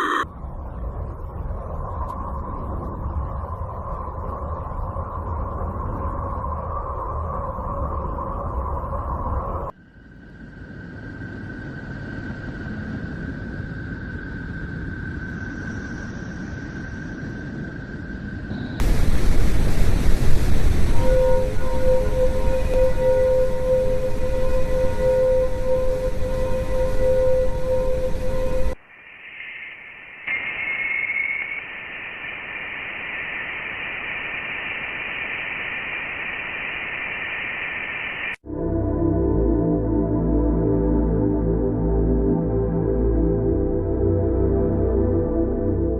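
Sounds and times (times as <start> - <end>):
high held tone: 0.0 - 0.2, 20.3 - 45.8
low rumbling hiss: 18.6 - 29.0.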